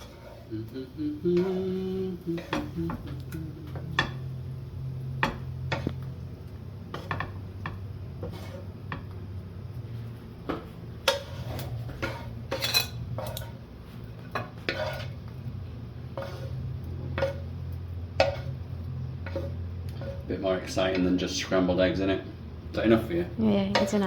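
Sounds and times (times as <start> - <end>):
steady low hum: 0.0 - 24.0
spoon scraping and clinking pan: 11.0 - 13.6, 14.3 - 15.2, 16.1 - 17.5, 18.2 - 18.6, 19.2 - 20.3.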